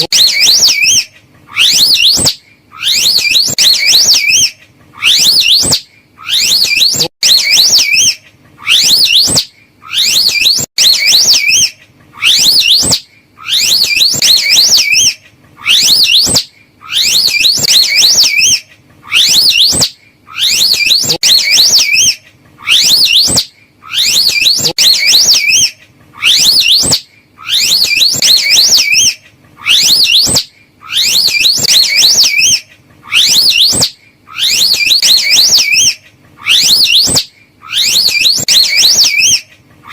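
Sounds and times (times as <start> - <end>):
high warbling animal whistle: 0.0 - 39.9.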